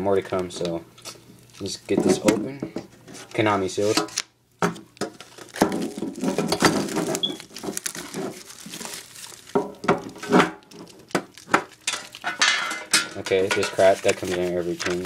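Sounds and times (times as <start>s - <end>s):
plastic wrap crinkling and tearing: 1.0s - 2.3s, 4.9s - 15.0s.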